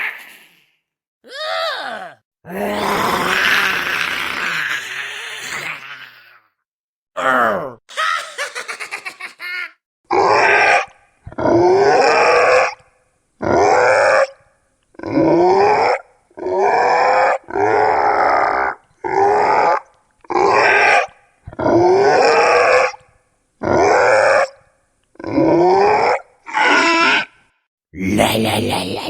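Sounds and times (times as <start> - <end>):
goblin creature vocalizations: 1.8 - 6.4, 7.2 - 7.8, 10.1 - 12.8, 25.2 - 27.4, 28.0 - 29.0.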